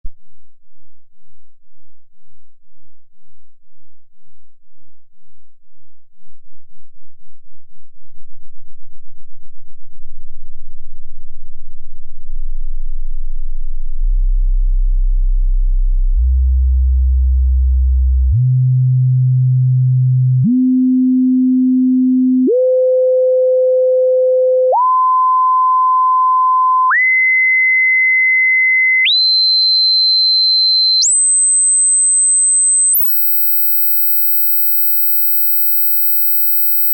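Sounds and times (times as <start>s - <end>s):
rising sine tones: 8.6s - 27.6s, 29.0s - 36.9s.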